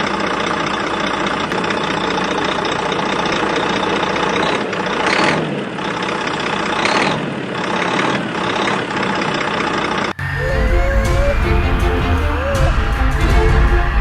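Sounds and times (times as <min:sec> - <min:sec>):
toy excavator motor drone: 0:00.0 - 0:14.0
music: 0:10.2 - 0:14.0.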